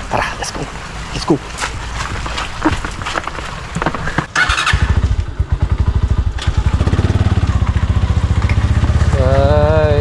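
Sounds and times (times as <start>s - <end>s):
motorcycle engine starting and running: 2.6s - 10.0s.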